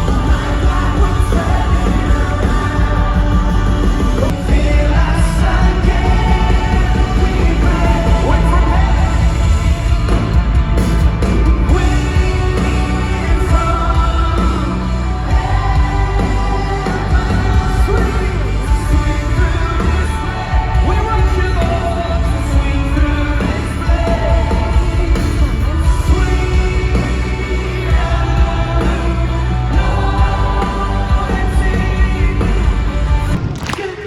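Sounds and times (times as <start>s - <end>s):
pop music with singing: 0.0s - 34.0s.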